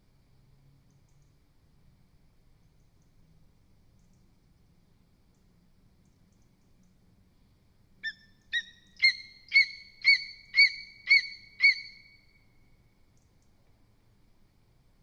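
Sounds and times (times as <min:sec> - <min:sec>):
eagle yelping: 0:08.0 - 0:12.1.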